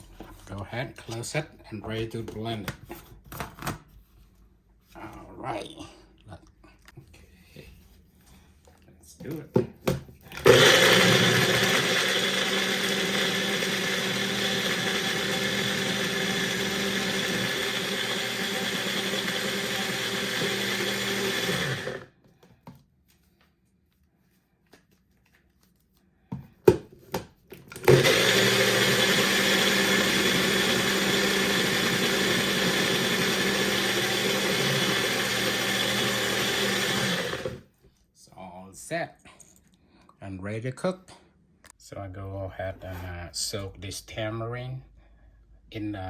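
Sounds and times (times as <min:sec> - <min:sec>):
blender grinding: 0:10.3 - 0:22.2, 0:27.7 - 0:37.7.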